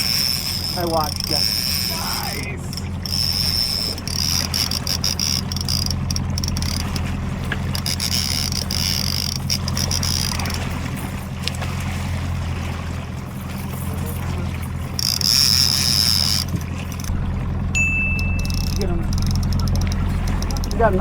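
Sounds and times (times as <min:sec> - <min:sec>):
thin high-pitched whine: 0:00.0 - 0:07.1, 0:17.7 - 0:21.0
patter of clicks: 0:00.0 - 0:11.6, 0:18.4 - 0:21.0
boat engine humming: 0:00.0 - 0:21.0.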